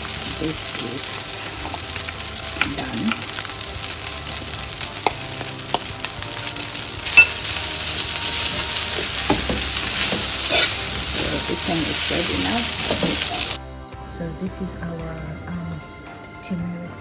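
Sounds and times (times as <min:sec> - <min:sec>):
rice sizzling in a frying pan: 0:00.0 - 0:13.6
utensil scraping a pan: 0:00.0 - 0:13.6.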